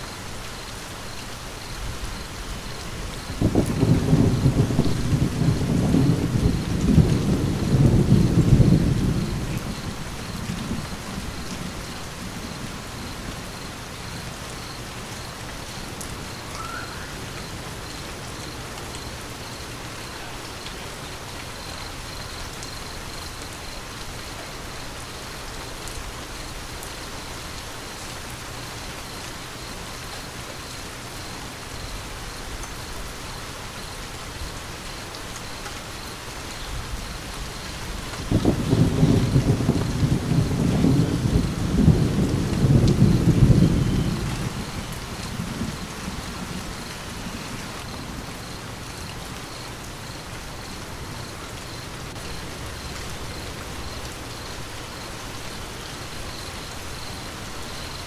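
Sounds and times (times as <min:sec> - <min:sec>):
steady rain: 0:00.0 - 0:58.0
low thunder rumble: 0:01.8 - 0:18.7, 0:36.6 - 0:58.0.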